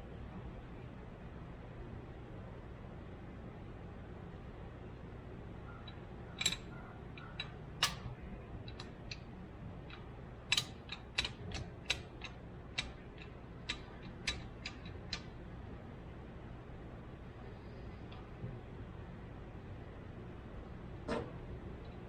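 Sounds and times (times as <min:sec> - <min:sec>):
low steady hum: 0:00.0 - 0:22.0
hand tools clicking and tapping: 0:06.4 - 0:08.1, 0:09.9 - 0:15.3.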